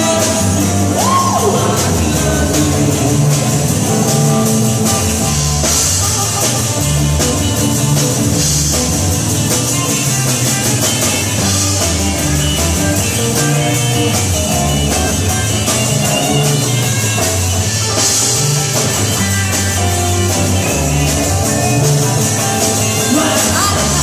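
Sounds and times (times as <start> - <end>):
drum kit beat: 0.0 - 24.0
rock band playing: 0.0 - 24.0.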